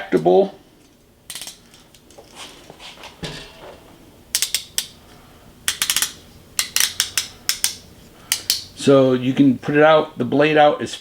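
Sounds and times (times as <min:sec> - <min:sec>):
utility knife blade clicking: 0:05.7 - 0:08.6.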